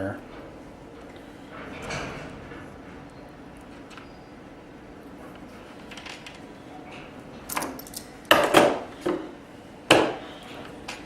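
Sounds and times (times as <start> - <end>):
tools and parts clacking: 5.9 - 11.0.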